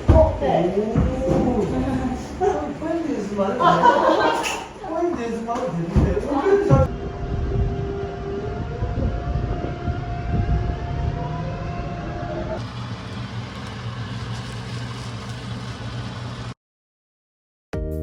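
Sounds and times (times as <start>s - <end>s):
vehicle engine rumble and whine: 6.8s - 16.6s.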